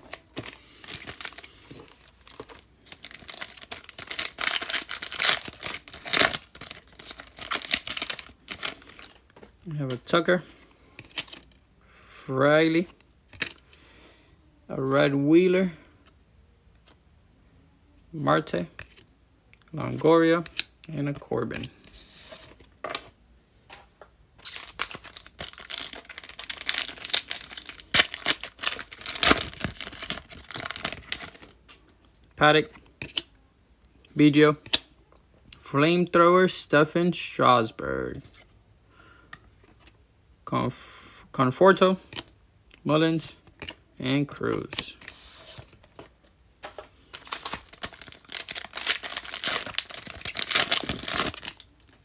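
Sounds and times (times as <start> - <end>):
wrapper tearing and crinkling: 0.0 - 9.2, 24.4 - 31.6, 47.2 - 52.0
cards being handled: 0.0 - 11.6, 24.4 - 31.8, 43.4 - 52.0.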